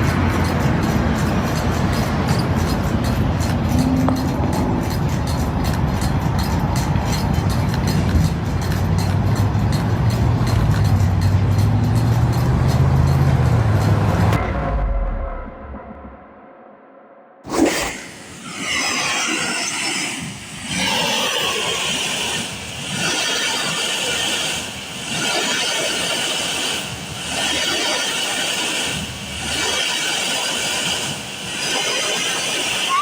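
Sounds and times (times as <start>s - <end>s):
rushing hum with high hiss: 17.5s - 33.0s.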